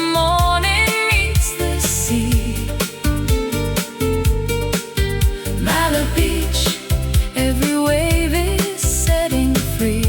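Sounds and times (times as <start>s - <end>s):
vocal lines: 0.0s - 3.3s, 5.2s - 10.0s
bass and kick drum beat: 0.0s - 10.0s
lounge pop music: 0.0s - 10.0s
plucked guitar: 0.5s - 8.4s.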